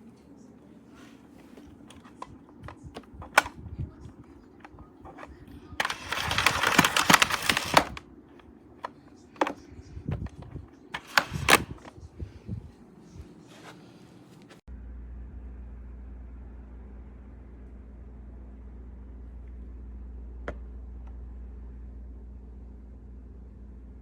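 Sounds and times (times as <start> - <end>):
plastic clicks and knocks: 1.9 - 3.5, 4.6 - 8.0, 8.8 - 11.9.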